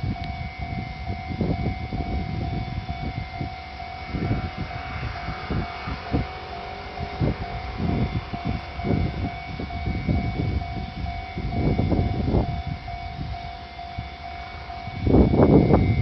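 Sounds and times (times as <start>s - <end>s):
level crossing warning bell: 0.0s - 16.0s.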